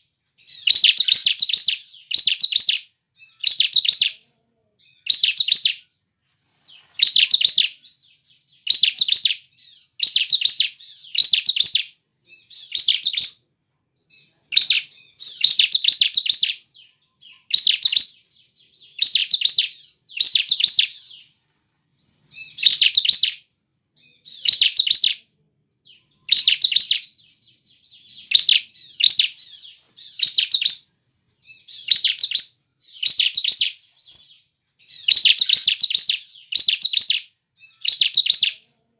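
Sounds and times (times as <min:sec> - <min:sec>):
soft bird twittering: 0:00.0 - 0:38.9
bird high trilled phrases: 0:00.4 - 0:04.2, 0:04.8 - 0:05.8, 0:06.6 - 0:13.4, 0:14.1 - 0:21.3, 0:22.3 - 0:23.4, 0:24.0 - 0:38.8.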